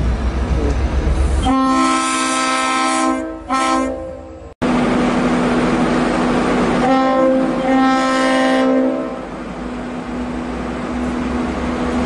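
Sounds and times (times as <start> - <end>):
rushing noise of a train: 0.0 - 12.0
locomotive air horn: 1.4 - 4.3, 6.8 - 9.3.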